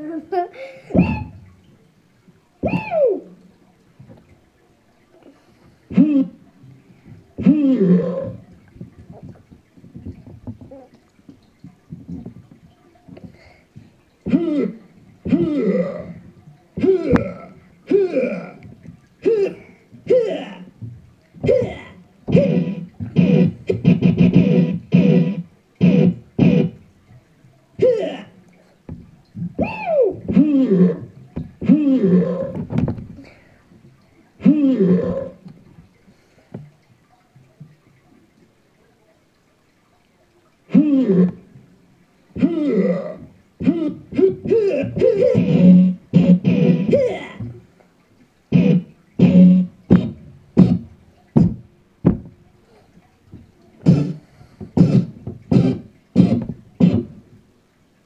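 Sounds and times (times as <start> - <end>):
electronic keyboard novelty notes: 22.3 - 26.8, 45.0 - 47.1, 48.5 - 50.8.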